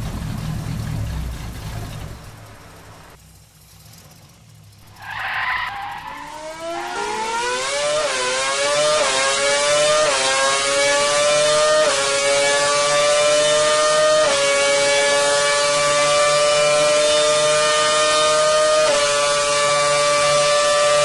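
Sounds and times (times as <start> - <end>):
tire screech: 0.0 - 10.4
car engine revving with gear shifts: 0.0 - 21.0.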